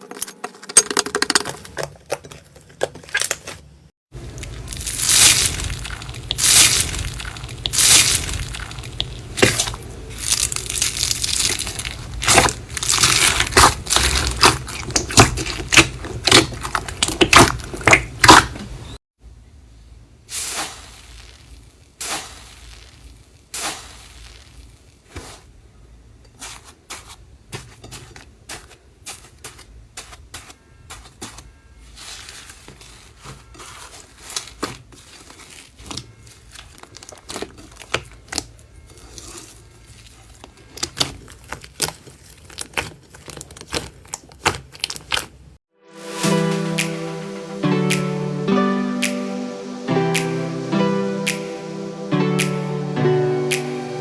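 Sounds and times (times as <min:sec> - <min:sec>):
slime crackling and popping: 0:04.2 - 0:19.0, 0:20.3 - 0:25.4, 0:32.0 - 0:45.6
slime squeezed by hand: 0:04.3 - 0:19.0, 0:20.3 - 0:25.4.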